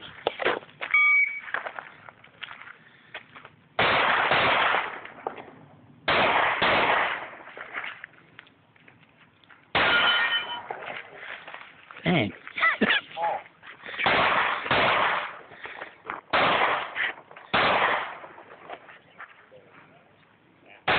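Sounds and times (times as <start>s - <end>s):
shot timer beep: 0.9s - 1.5s
handgun shots: 6.1s - 7.3s, 16.3s - 18.2s
metallic ringing: 9.8s - 10.7s.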